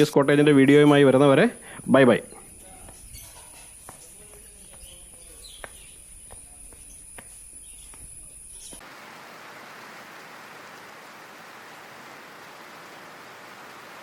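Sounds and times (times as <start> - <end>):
insect drone: 0.8 - 3.0, 5.4 - 14.0
faint bird chirps: 1.6 - 8.8.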